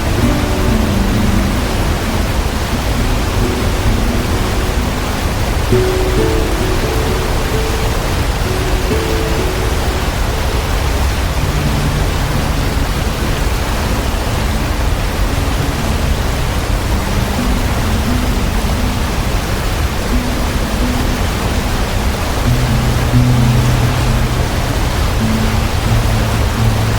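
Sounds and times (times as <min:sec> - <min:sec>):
low sustained musical notes: 0:00.0 - 0:26.9
waterfall roaring: 0:00.0 - 0:26.9.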